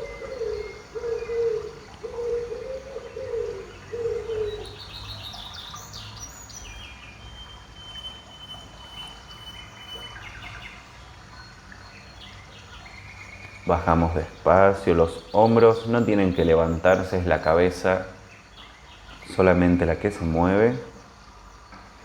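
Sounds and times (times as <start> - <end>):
bird cooing: 0.0 - 5.8.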